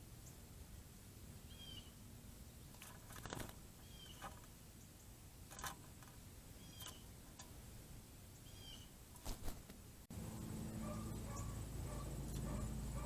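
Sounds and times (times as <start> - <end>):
bird chirping: 1.4 - 5.6, 6.4 - 9.0, 10.5 - 13.0.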